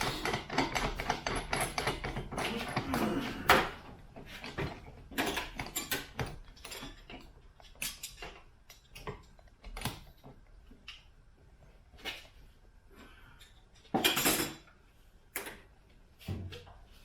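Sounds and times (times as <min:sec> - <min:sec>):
metal tools clinking and tapping: 0:00.0 - 0:03.7, 0:13.4 - 0:14.7.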